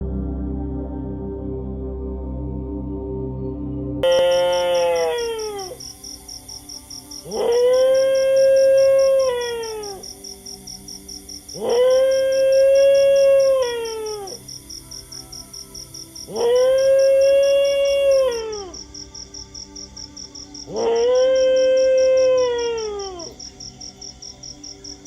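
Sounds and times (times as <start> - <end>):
soft music with fast pulse: 0.0 - 25.0
dog howling: 4.0 - 6.0, 7.2 - 10.3, 11.5 - 14.5, 16.2 - 18.9, 20.6 - 23.5.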